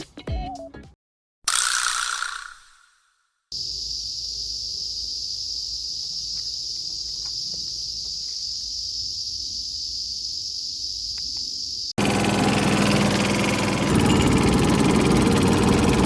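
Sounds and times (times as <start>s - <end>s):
high-pitched insect chorus: 3.5s - 12.0s.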